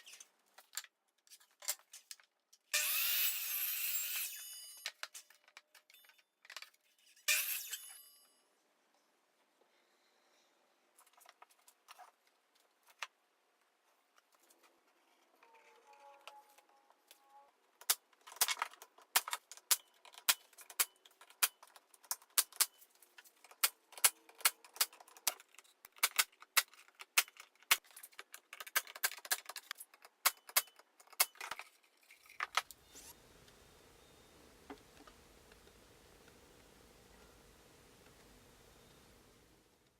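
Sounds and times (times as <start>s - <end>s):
faint steady hiss: 32.6s - 39.9s.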